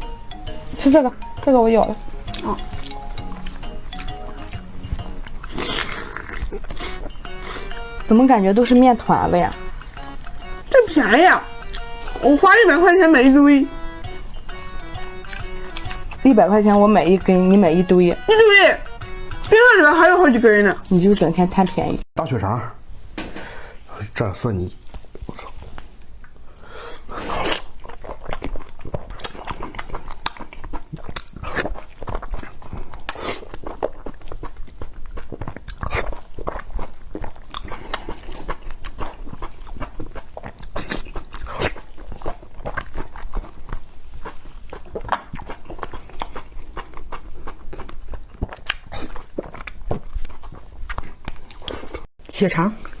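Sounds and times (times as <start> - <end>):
person chewing wetly: 2.1 - 8.1, 8.8 - 10.8, 11.5 - 12.2, 14.1 - 16.9, 27.0 - 52.1.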